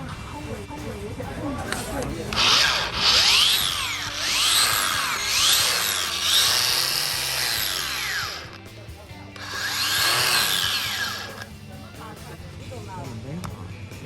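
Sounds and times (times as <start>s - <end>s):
background music: 0.0s - 14.0s
angle grinder whine: 2.3s - 11.5s.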